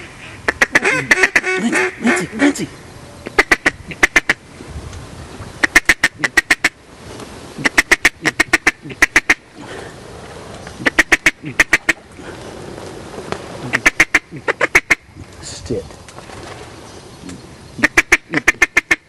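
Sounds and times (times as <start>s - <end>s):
duck quacking: 0.2s - 2.7s, 7.6s - 9.4s, 10.8s - 12.1s, 13.7s - 15.0s, 17.8s - 19.0s.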